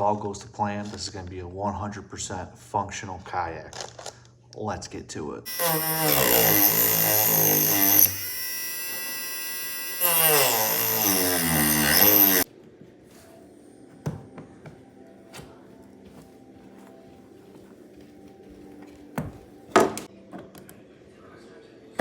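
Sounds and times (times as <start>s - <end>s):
electric grinder on plastic: 5.5s - 12.5s.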